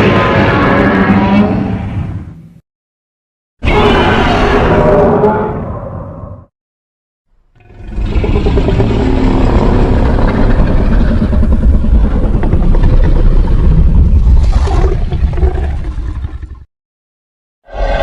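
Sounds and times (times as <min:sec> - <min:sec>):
deep rough monster rumble: 0:07.5 - 0:16.7.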